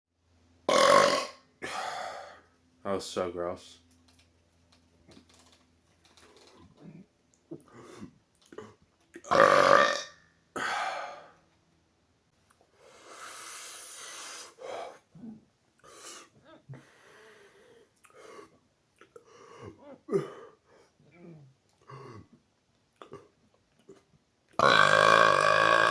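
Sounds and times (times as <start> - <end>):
man burping: 0.7 - 2.0, 8.5 - 11.3, 19.0 - 20.5, 23.0 - 23.4, 24.6 - 25.9.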